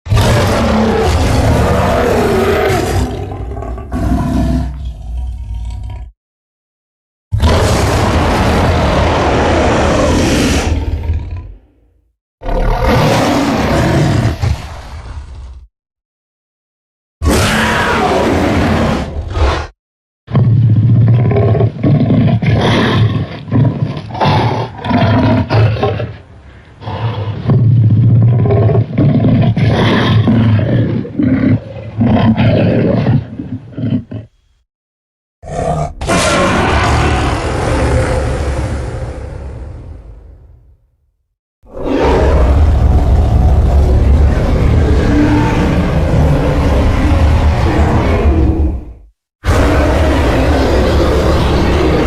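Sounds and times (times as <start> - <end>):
creature roar: 0.1 - 5.2, 7.4 - 11.7, 12.4 - 14.8, 17.2 - 19.7, 35.4 - 39.9, 41.7 - 52.0.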